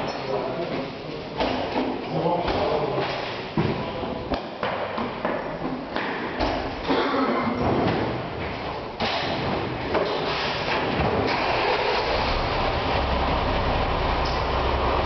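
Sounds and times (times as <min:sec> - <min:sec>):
doors sliding and thumping: 0:05.1 - 0:12.8
fire truck engine idling: 0:11.4 - 0:15.0.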